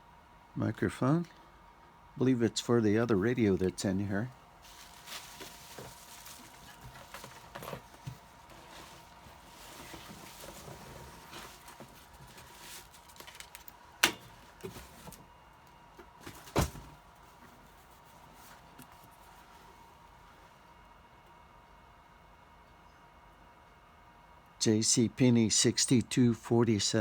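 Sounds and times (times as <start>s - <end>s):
equipment handling rustles and clicks: 4.6s - 15.3s.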